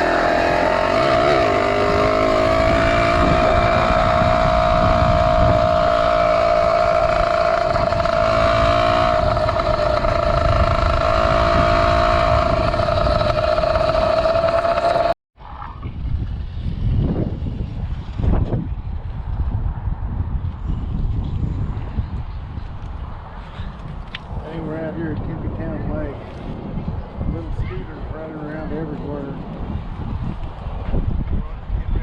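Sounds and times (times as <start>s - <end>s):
two-stroke engine at high revs: 0.0s - 15.2s
wind noise on microphone: 0.0s - 32.0s.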